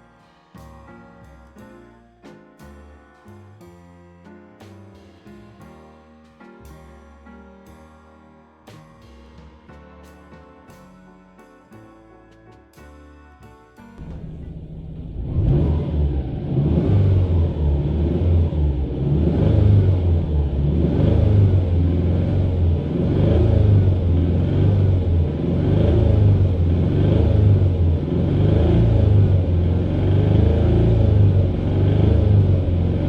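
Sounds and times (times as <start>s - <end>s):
car engine running: 14.0s - 33.0s.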